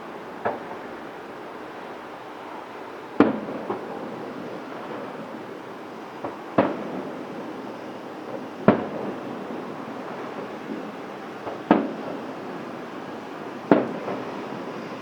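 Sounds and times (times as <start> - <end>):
faint fireworks pops: 0.0 - 0.9, 3.2 - 5.4, 6.1 - 15.0
fireworks booming: 3.1 - 15.0
wind noise: 3.4 - 15.0.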